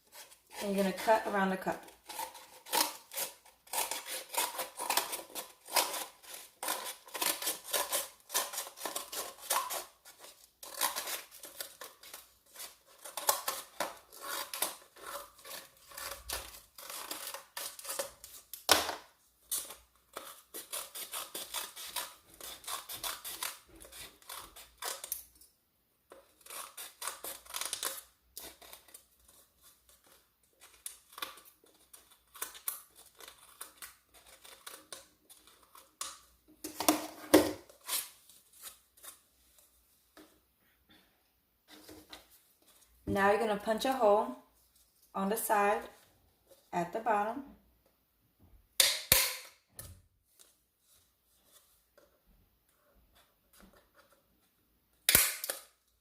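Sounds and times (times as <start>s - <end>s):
scissors snipping paper: 2.0s - 18.5s, 19.5s - 25.2s, 26.1s - 36.0s.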